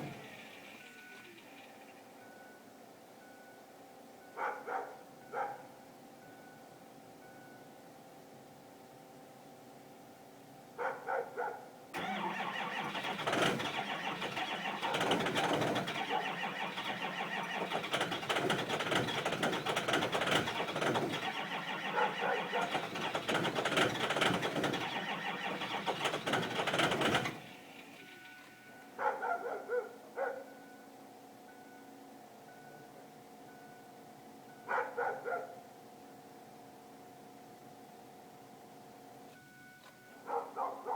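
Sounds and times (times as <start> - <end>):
diesel engine cranking: 0.0 - 1.8, 12.0 - 28.8.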